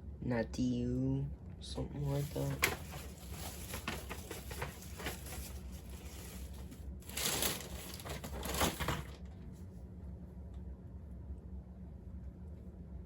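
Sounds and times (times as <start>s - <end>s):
packaging rustling and crinkling: 2.0s - 9.3s.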